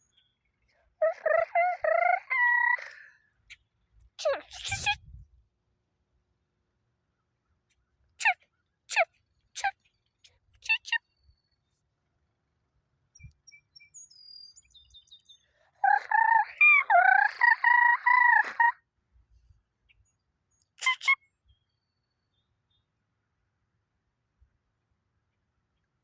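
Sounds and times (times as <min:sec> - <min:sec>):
bird calls: 0:01.0 - 0:03.6, 0:15.8 - 0:18.7
faint high chirping: 0:01.0 - 0:05.2, 0:13.1 - 0:18.8.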